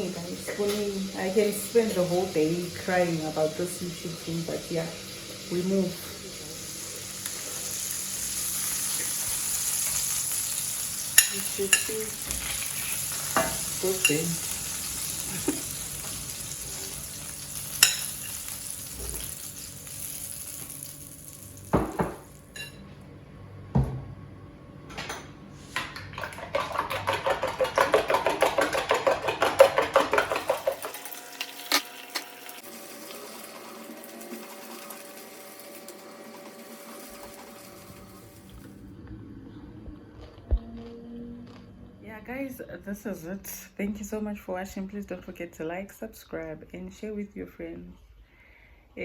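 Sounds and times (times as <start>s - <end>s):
food sizzling in a pot: 0.0s - 22.8s, 30.5s - 38.7s
spoon clattering while stirring: 17.7s - 18.5s, 26.2s - 31.1s.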